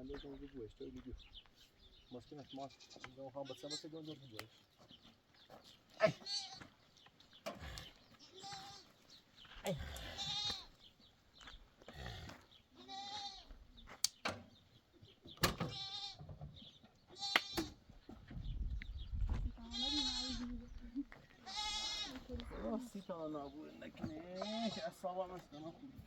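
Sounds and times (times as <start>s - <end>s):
goats and sheep bleating: 2.4s - 4.1s, 5.9s - 6.8s, 7.6s - 10.9s, 11.8s - 13.6s, 15.6s - 16.4s, 17.1s - 17.8s, 19.6s - 26.0s.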